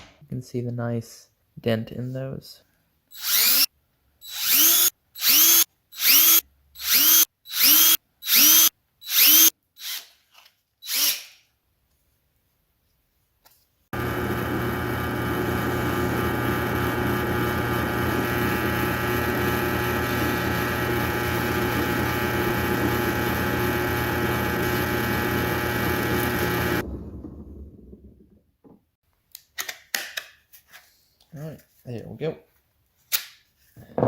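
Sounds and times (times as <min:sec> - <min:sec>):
electric drill drilling: 0:03.2 - 0:10.1, 0:10.8 - 0:11.4, 0:14.0 - 0:26.9.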